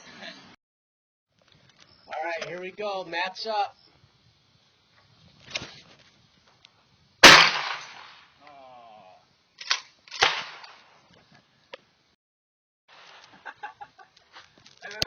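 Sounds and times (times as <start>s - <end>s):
shotgun blast: 7.2s - 8.2s, 9.7s - 10.8s.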